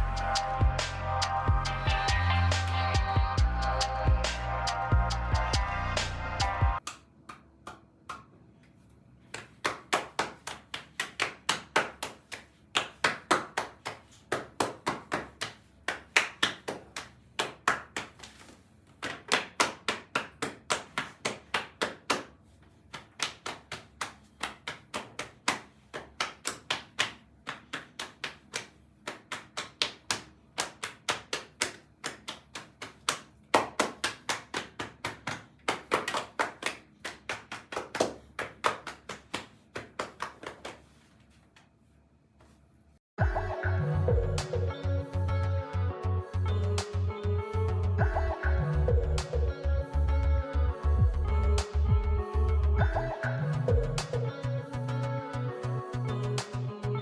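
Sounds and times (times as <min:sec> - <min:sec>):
rapid hand slaps: 0:06.8 - 0:08.4, 0:09.3 - 0:41.1.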